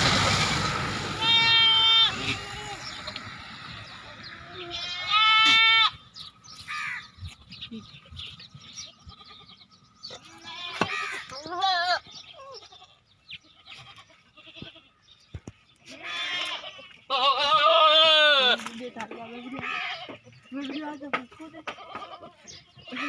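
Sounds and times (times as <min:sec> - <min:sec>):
goats bleating: 0:01.1 - 0:03.2, 0:04.4 - 0:06.0, 0:08.7 - 0:15.1, 0:15.8 - 0:20.7, 0:21.5 - 0:23.0.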